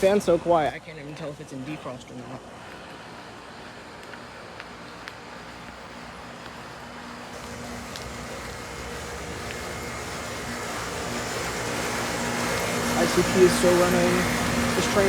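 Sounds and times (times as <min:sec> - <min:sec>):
low compressor hum: 0:00.0 - 0:15.0
fans rushing: 0:05.4 - 0:15.0.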